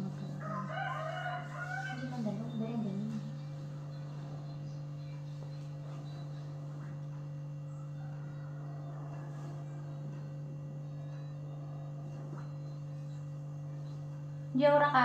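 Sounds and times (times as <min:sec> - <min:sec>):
faint high steady tones: 0:00.0 - 0:06.8
low electrical hum: 0:00.0 - 0:15.0.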